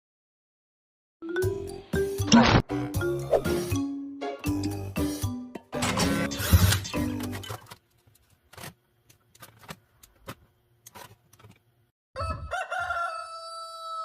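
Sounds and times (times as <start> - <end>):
rooster crowing: 12.2 - 14.0.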